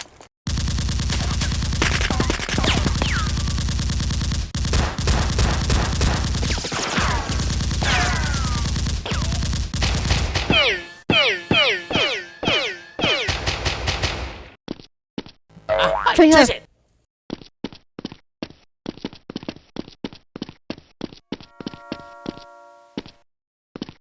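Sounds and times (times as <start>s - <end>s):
rapid automatic gunfire: 0.5s - 10.8s.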